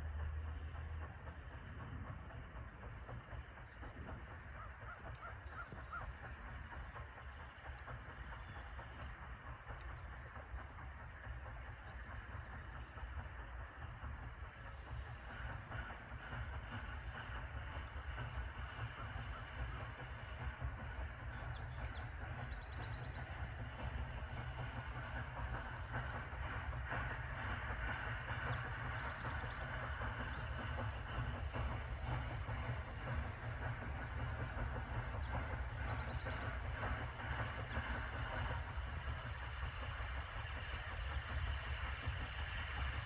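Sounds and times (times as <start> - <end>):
train wheels rumbling on rails: 0.0 - 43.0.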